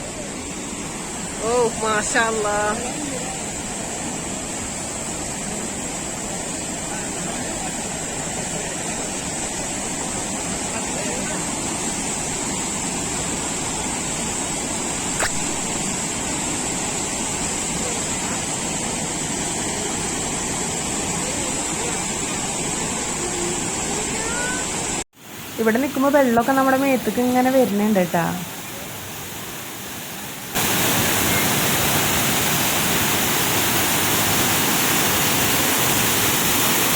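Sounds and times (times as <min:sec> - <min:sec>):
waterfall splashing onto rock: 0:30.5 - 0:36.9.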